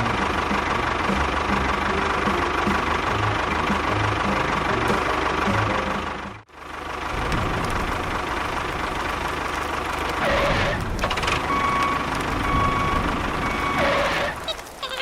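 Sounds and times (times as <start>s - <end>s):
construction vehicle engine rumbling: 0.0s - 15.0s
reversing alarm beeping: 10.4s - 14.4s.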